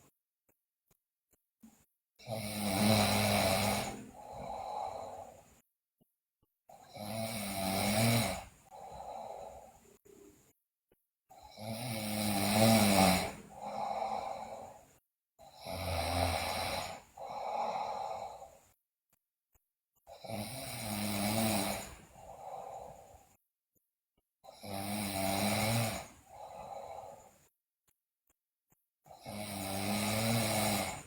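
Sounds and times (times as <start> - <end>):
girl snoring: 2.2 - 5.6, 6.7 - 9.9, 11.4 - 18.7, 20.1 - 23.3, 24.4 - 27.4, 29.1 - 31.0.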